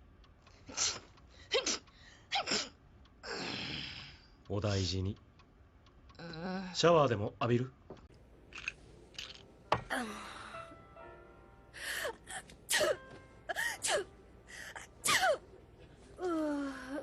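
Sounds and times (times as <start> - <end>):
faint background music: 8.7 - 17.0.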